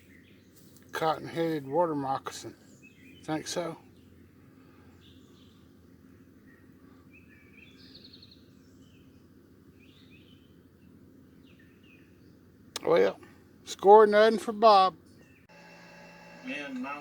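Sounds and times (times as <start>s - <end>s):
low steady background hum: 0.1s - 17.0s
bird chirps and calls: 2.5s - 9.2s.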